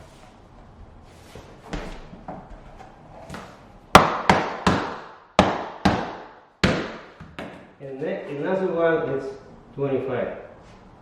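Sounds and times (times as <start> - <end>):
hammer knocking floor planks: 4.0 - 7.7.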